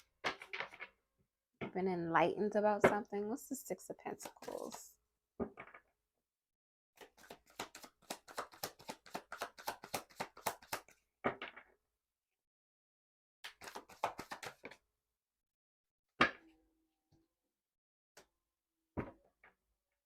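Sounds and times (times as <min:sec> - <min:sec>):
cards slapping together: 0:07.0 - 0:11.0, 0:13.5 - 0:14.8.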